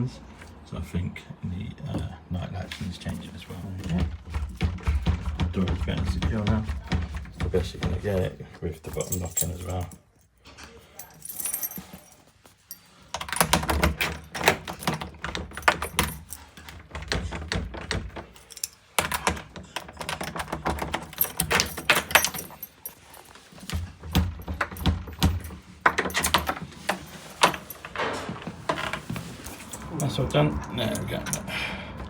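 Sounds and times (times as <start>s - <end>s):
metallic clicking and rattling: 13.1s - 31.5s.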